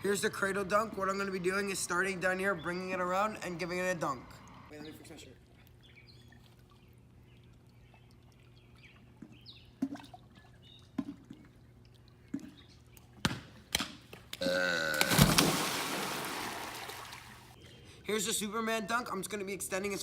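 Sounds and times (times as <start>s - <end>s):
loud burp: 14.4s - 15.2s
big water splash: 15.0s - 17.5s.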